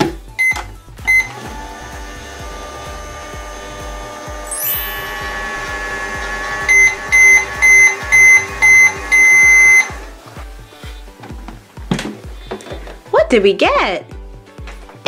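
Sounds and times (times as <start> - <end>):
background music with steady beat: 0.0 - 15.0
microwave beeps: 0.4 - 1.4, 4.5 - 10.1
microwave oven humming: 1.0 - 10.2.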